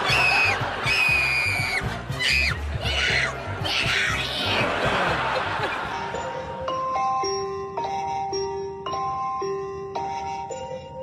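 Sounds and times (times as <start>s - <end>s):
background music with low beat: 0.0s - 7.4s.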